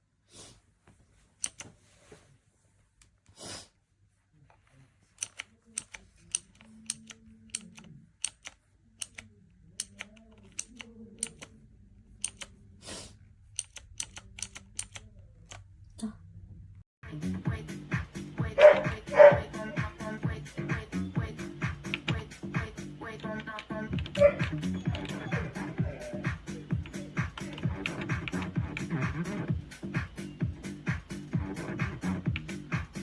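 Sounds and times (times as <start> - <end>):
mechanical keyboard keystrokes: 13.6 - 15.6, 26.7 - 29.2.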